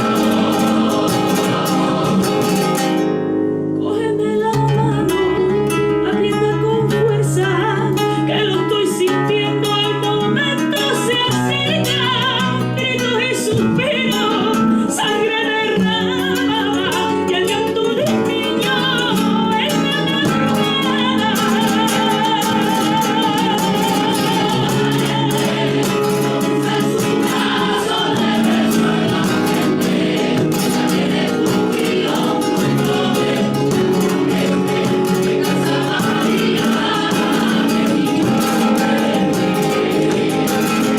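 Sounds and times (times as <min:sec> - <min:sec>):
carol sung with instruments: 0:00.0 - 0:40.9.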